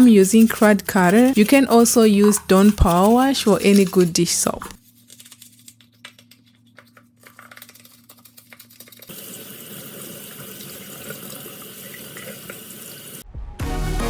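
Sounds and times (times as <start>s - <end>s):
brush scrubbing filter: 8.7s - 13.2s
tap running: 9.1s - 13.2s.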